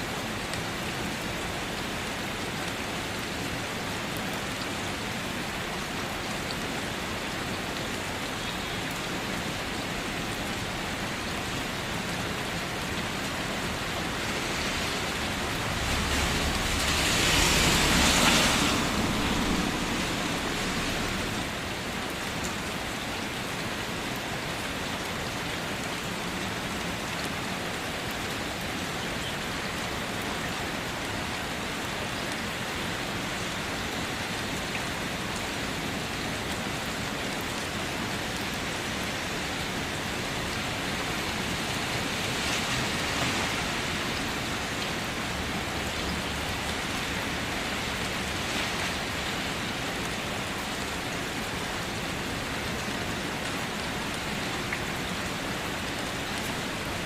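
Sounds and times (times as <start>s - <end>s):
rain pattering on car roof: 12.5s - 22.9s
low rumble: 15.0s - 21.5s.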